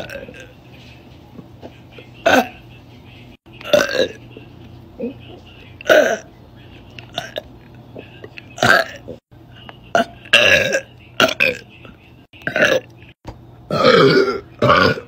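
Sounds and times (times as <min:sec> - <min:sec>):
woman burping: 0:02.2 - 0:02.6, 0:03.6 - 0:04.2, 0:05.8 - 0:06.3, 0:07.1 - 0:09.2, 0:09.9 - 0:11.6, 0:12.4 - 0:12.9, 0:13.7 - 0:15.0.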